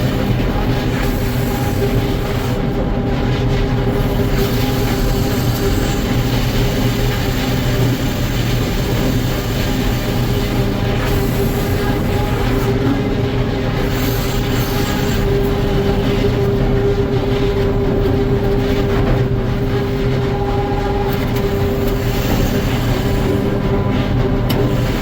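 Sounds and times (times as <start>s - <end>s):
sawmill cutting log: 3.9s - 16.2s, 21.4s - 25.0s.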